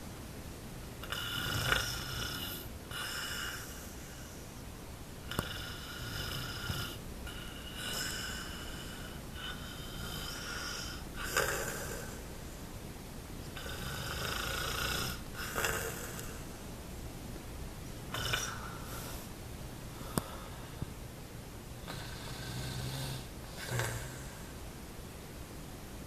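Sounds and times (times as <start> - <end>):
person snoring: 1.0 - 4.2, 5.3 - 12.2, 13.6 - 16.4, 18.1 - 19.3, 21.9 - 24.5.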